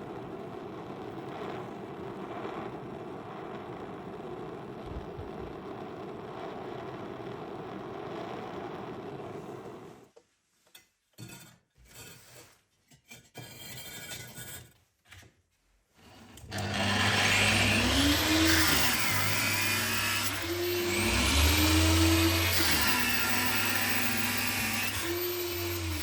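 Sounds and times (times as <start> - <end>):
faint workshop sounds: 0.0 - 26.0
electric power tool running: 16.5 - 26.0.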